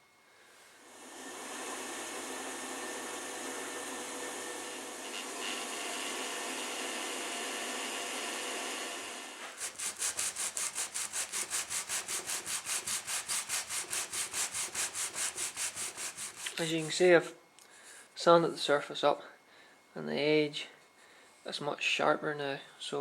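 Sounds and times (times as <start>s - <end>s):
machine hiss: 0.6s - 17.0s
wood rubbed on sandpaper: 9.5s - 17.1s.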